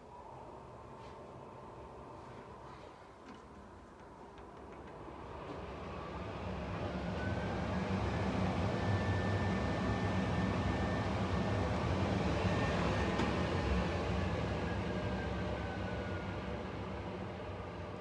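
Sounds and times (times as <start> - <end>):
extractor fan blowing: 5.0 - 18.0.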